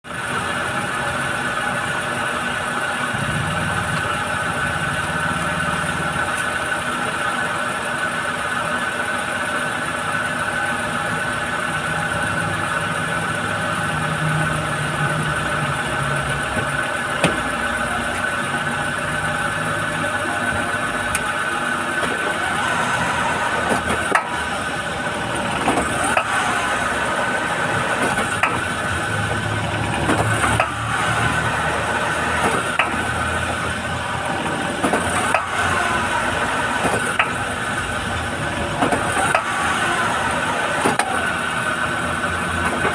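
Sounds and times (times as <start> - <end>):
car engine running: 0.1 - 42.9
sharp clunks of car shifting: 16.3 - 18.4, 25.5 - 27.1, 40.8 - 41.2.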